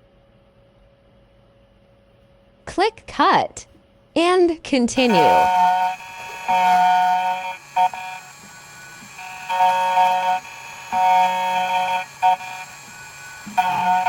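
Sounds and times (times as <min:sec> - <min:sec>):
sustained electronic chords: 0:05.0 - 0:14.0.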